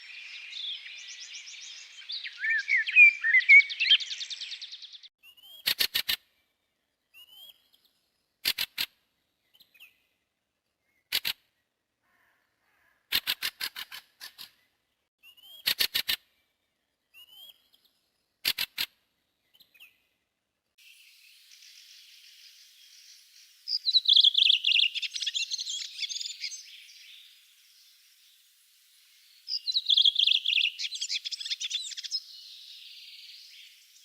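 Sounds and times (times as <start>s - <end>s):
bird calls: 0.0s - 5.8s, 20.9s - 28.4s, 29.0s - 34.0s
clicking bird chatter: 8.4s - 9.0s, 11.1s - 11.4s, 13.1s - 14.5s, 18.4s - 19.0s.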